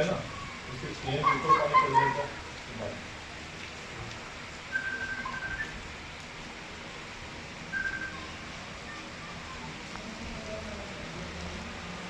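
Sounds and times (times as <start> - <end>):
heavy rain: 0.0 - 12.0
high whistle-like notes: 4.7 - 5.7, 7.8 - 8.2.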